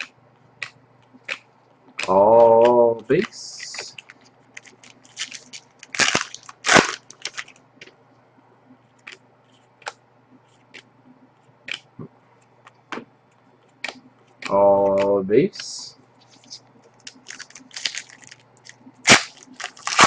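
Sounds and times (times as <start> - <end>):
trading cards clicking: 0.0 - 7.6
card stack rustling: 2.0 - 8.0, 16.2 - 20.0.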